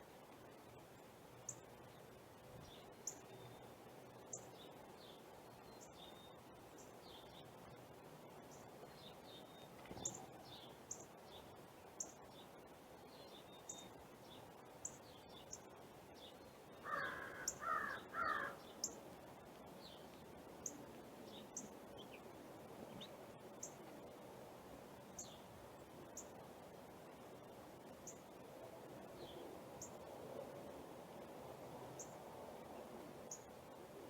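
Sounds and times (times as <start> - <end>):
small birds chirping: 0.4 - 19.1, 19.7 - 23.9
crow cawing: 16.8 - 18.6.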